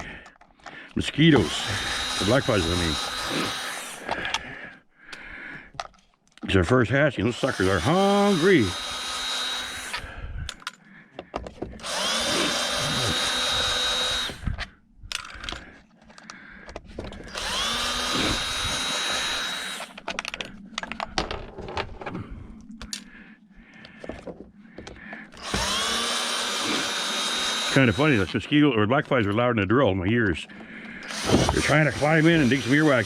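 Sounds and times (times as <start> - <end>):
power drill motor whine: 1.3 - 4.3, 7.4 - 10.2, 11.8 - 14.7, 17.1 - 20.1, 25.3 - 28.5, 31.0 - 33.0.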